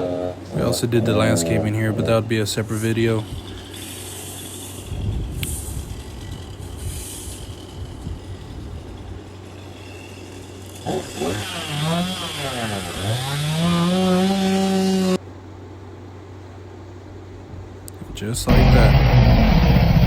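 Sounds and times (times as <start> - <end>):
chainsaw engine revving: 0.0 - 15.2, 18.5 - 20.0
low machine rumble: 0.0 - 15.2, 17.4 - 20.0.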